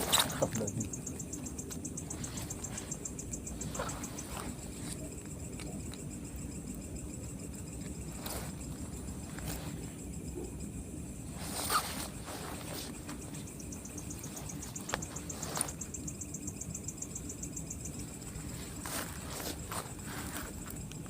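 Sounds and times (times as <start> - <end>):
night insects chirring: 0.0 - 21.0
rapid pulsing insect trill: 0.0 - 21.0
short rustles: 2.1 - 5.1, 11.3 - 15.9.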